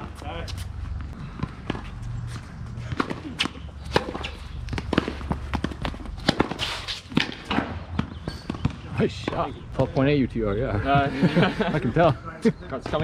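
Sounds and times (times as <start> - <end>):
rackets striking tennis ball: 0.0 - 9.6
ball bouncing on court: 2.8 - 9.5.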